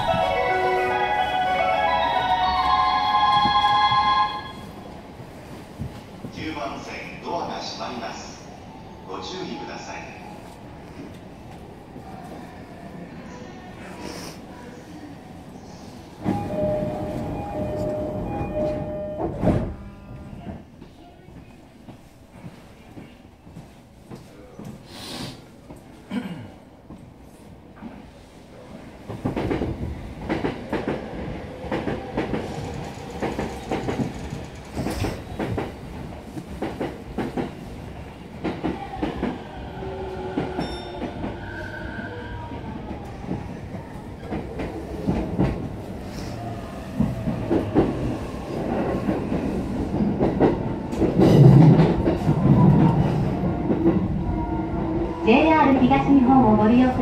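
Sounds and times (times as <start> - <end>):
train wheels clacking on rail joints: 31.7 - 37.6.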